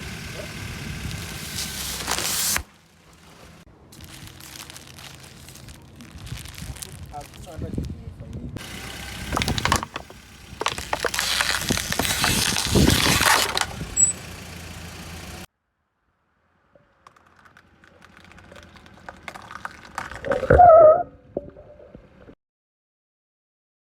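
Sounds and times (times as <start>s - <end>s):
steady running hum: 0.0s - 4.6s, 8.5s - 15.5s
items being crushed: 1.5s - 7.6s, 9.3s - 13.8s, 16.8s - 20.5s.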